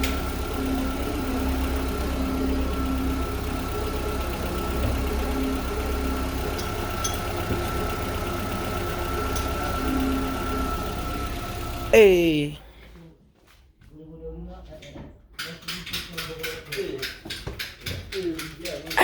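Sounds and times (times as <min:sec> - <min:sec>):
car engine idling: 0:00.0 - 0:11.9.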